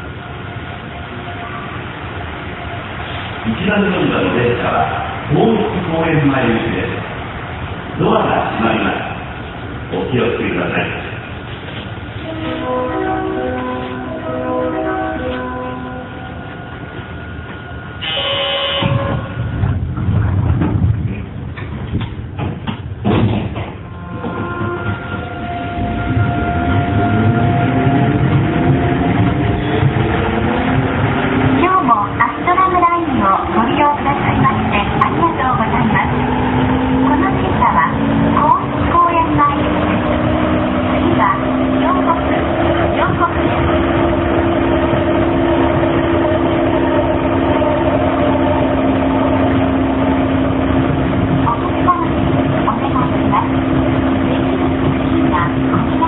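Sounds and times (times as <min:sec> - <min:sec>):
train low rumble: 0:00.0 - 0:56.0
thump: 0:22.0 - 0:23.8
train motor tones rising: 0:33.2 - 0:51.9.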